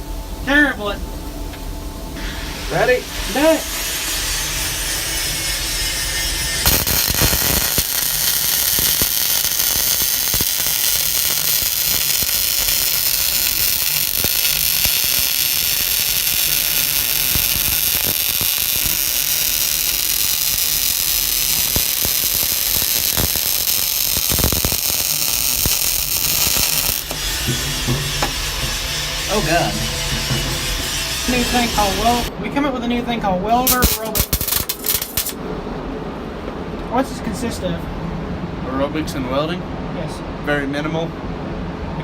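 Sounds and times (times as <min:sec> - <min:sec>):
welder arc crackling: 0:02.8 - 0:32.3, 0:33.6 - 0:35.4.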